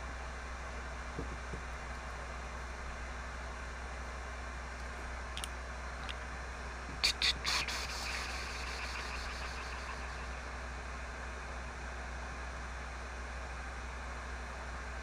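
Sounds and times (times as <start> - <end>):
steady hiss with low hum: 0.0 - 15.0.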